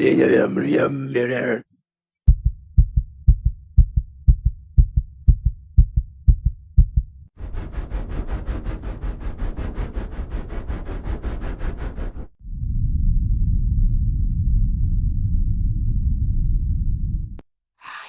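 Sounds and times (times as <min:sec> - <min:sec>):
heartbeat thumps: 0:02.3 - 0:07.2
low rumble with rapid ticking: 0:02.3 - 0:07.3, 0:12.5 - 0:17.4.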